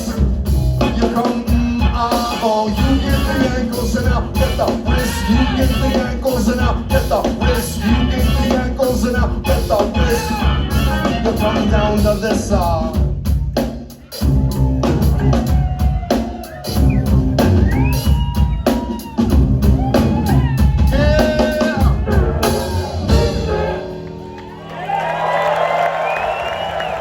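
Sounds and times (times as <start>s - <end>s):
rock band playing: 0.0s - 27.0s.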